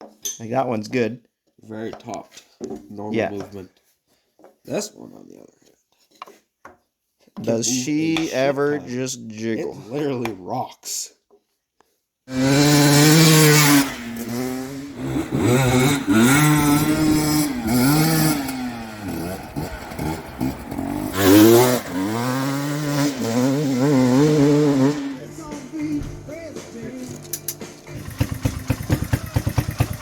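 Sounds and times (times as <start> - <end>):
motorcycle engine revving: 12.3 - 30.0.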